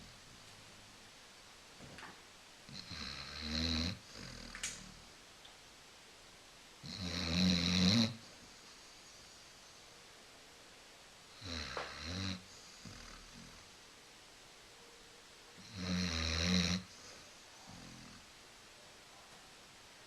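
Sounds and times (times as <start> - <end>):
dog snoring: 2.7 - 5.1, 6.8 - 9.3, 11.4 - 13.7, 15.6 - 18.3.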